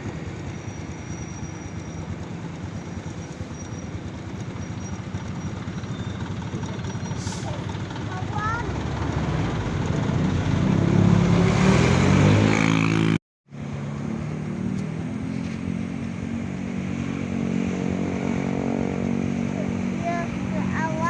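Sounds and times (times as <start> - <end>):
bus engine accelerating: 0.0 - 21.0
traffic engine drone: 0.0 - 21.0.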